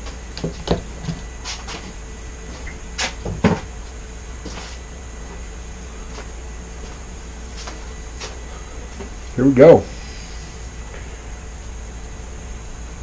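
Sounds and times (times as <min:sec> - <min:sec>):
objects knocking on a work table: 0:03.2 - 0:03.7.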